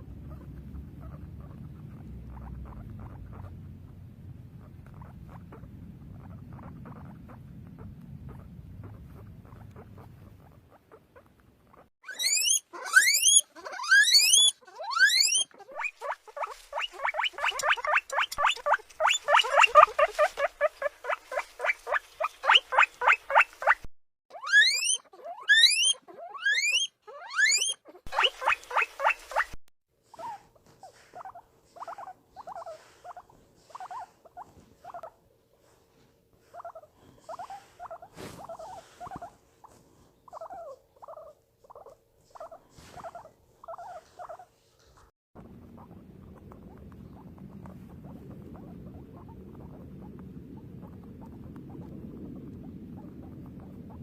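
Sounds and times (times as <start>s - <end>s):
faint steady hum: 0.0s - 11.8s, 30.1s - 54.0s
guinea pigs wheeking: 0.0s - 35.8s, 36.4s - 54.0s.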